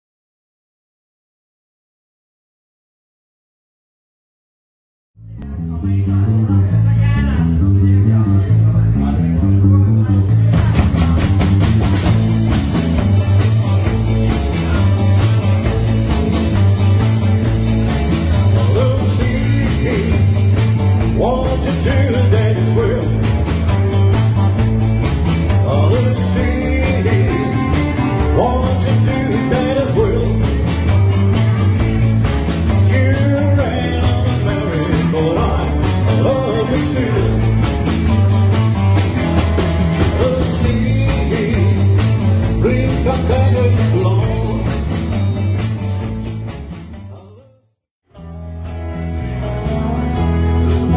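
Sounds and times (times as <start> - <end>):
band playing rock and roll: 6.0 - 47.4, 48.1 - 50.9.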